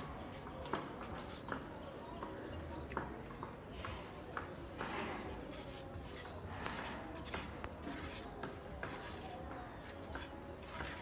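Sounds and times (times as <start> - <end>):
scraping on rough surface: 4.8 - 11.0.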